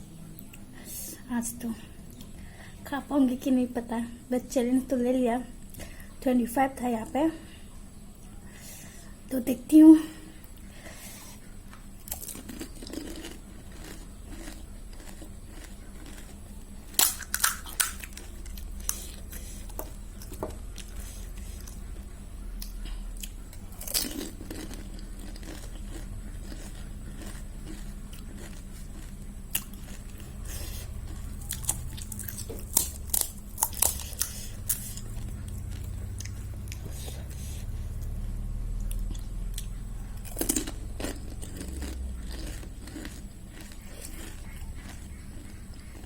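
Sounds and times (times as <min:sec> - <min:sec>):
steady low hum: 0:00.0 - 0:46.0
biting and chewing: 0:10.5 - 0:46.0
crisp shells cracking: 0:16.9 - 0:18.7.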